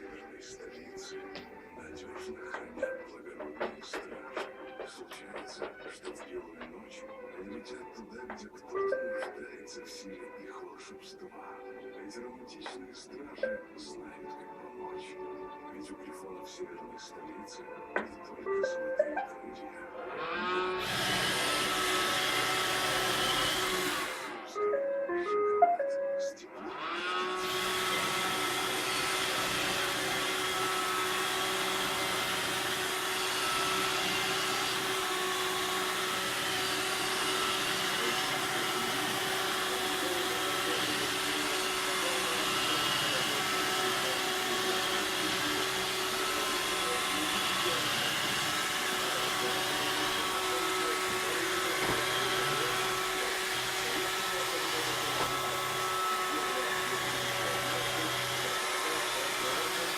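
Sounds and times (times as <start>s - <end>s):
robot vacuum cleaner hum: 20.0s - 25.5s, 26.6s - 59.9s.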